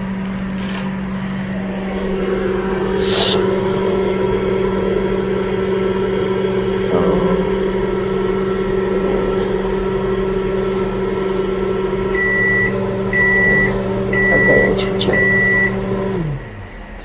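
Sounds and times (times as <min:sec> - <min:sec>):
microwave oven humming: 0:00.0 - 0:17.0
microwave beeps: 0:11.8 - 0:16.3.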